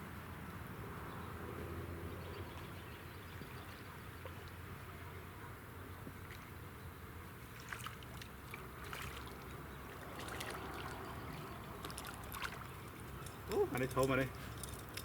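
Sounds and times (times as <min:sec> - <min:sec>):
water lapping against boat hull: 0:07.4 - 0:14.8.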